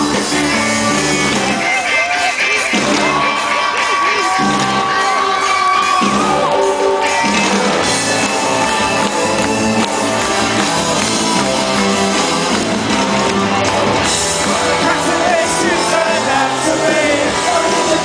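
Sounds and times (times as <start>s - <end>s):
live rock band: 0.0s - 18.0s
person singing: 14.5s - 18.0s.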